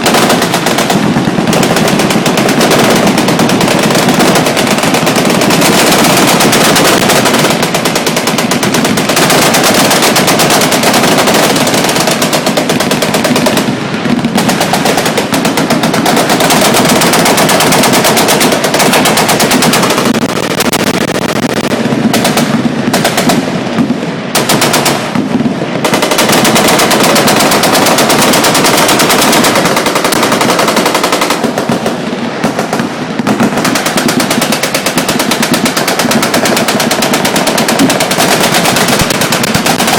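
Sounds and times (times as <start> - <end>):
machine guns firing: 0.0 - 39.9.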